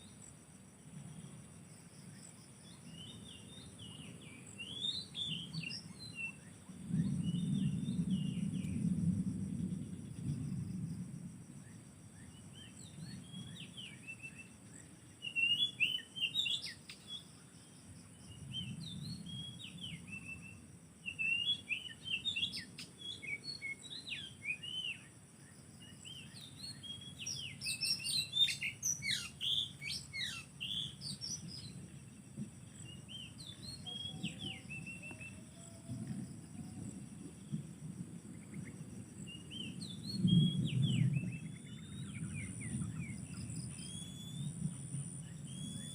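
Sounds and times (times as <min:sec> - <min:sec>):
bird chirping and whistling: 0:26.7 - 0:31.2.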